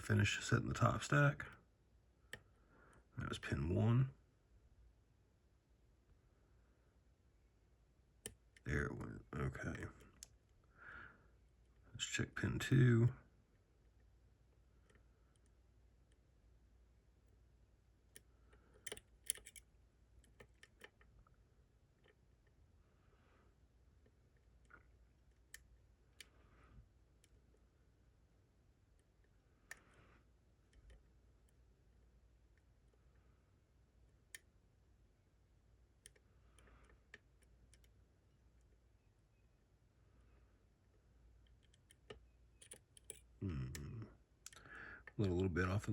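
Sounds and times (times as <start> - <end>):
lock pick clicking in a lock: 18.1 - 21.1, 41.4 - 43.3.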